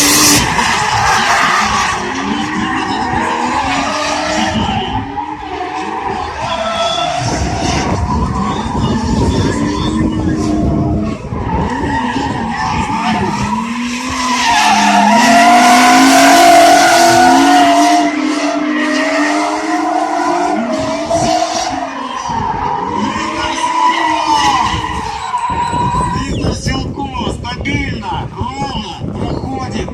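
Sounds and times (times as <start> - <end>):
car engine revving hard: 0.0 - 25.5
tyres squealing: 11.3 - 20.5.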